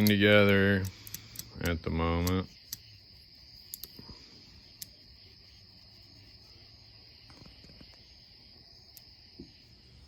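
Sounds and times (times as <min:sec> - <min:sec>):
pliers clicking open and shut: 0:00.0 - 0:02.8
insect chirring: 0:00.0 - 0:10.0.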